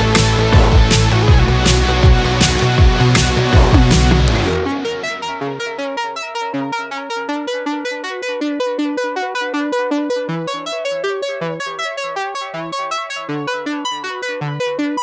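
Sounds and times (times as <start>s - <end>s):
pulsing bass line: 0.0s - 6.2s
repeated synthesizer notes: 0.0s - 8.1s.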